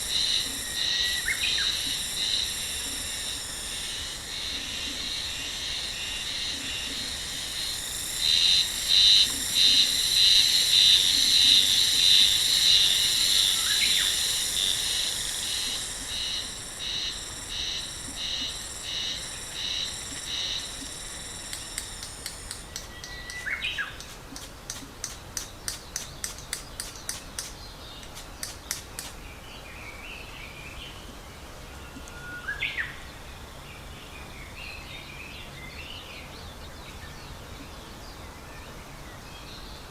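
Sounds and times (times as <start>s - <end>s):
insects trilling: 0.0s - 29.2s.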